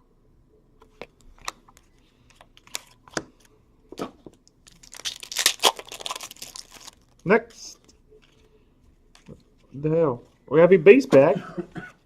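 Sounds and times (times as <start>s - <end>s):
card wrapper crinkling and tearing: 2.6s - 3.1s, 4.6s - 7.3s.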